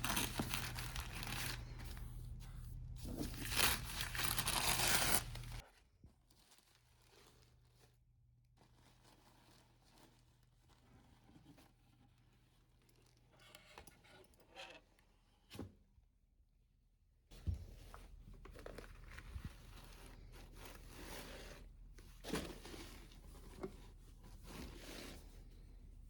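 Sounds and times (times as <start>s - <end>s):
packaging rustling: 0.0s - 2.4s, 3.0s - 5.6s, 17.8s - 21.1s.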